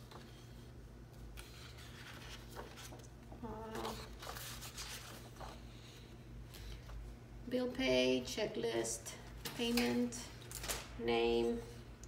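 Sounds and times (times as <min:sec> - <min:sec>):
paper pages rustling: 0:00.0 - 0:07.0
low electrical hum: 0:00.0 - 0:12.0.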